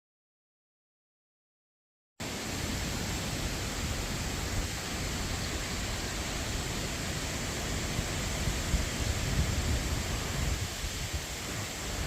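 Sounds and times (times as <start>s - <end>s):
strong wind buffeting microphone: 2.6s - 12.0s.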